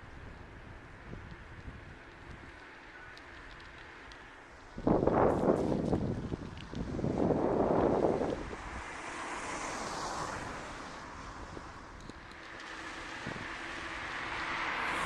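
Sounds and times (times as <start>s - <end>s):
wind buffeting microphone: 4.6s - 9.2s, 10.2s - 15.0s.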